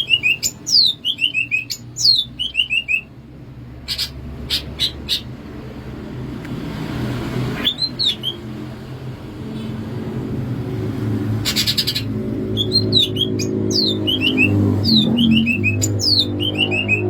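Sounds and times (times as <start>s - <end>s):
bird singing whistled phrases: 0.0s - 3.1s, 7.6s - 8.5s, 11.5s - 17.0s.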